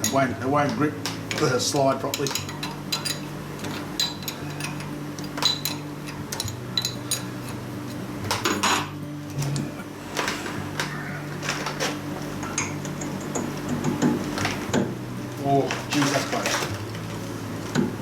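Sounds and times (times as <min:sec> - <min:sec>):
metal tools clinking: 0:01.3 - 0:08.9, 0:15.6 - 0:16.7.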